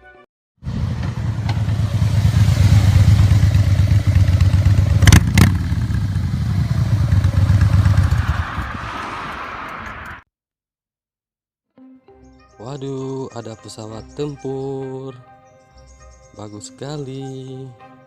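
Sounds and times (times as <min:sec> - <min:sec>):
motorcycle engine rumbling: 0:00.6 - 0:10.1.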